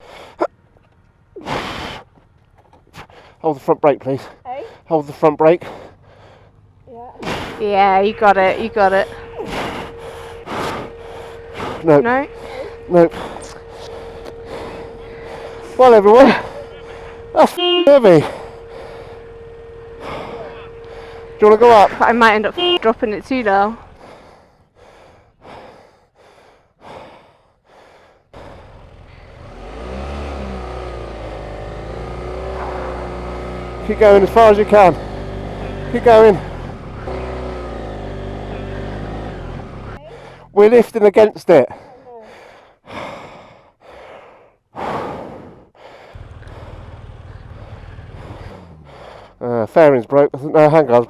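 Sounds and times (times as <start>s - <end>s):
heavy panting breaths: 0.0s - 0.6s, 1.4s - 3.5s, 4.2s - 5.0s, 5.6s - 17.4s, 18.2s - 21.4s, 23.7s - 29.5s, 37.6s - 40.7s, 41.6s - 49.5s
steady low hum: 0.0s - 49.7s.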